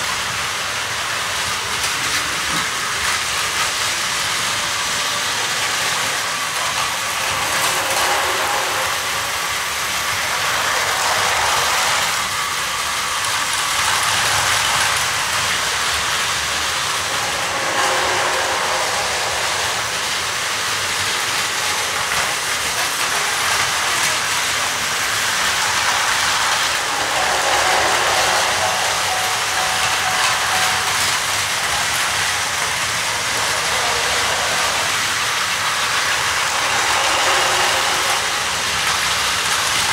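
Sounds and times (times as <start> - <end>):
toy train motors whirring: 0.0 - 39.9.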